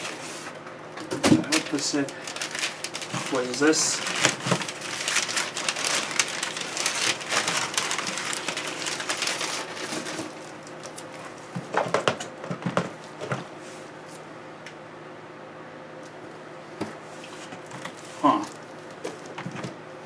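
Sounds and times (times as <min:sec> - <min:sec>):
packing material rustling and crinkling: 0:00.0 - 0:13.4.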